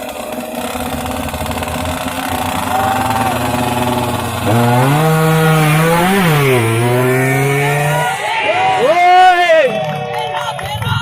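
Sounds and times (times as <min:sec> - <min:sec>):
two-stroke motorcycle engines revving: 0:00.0 - 0:08.9.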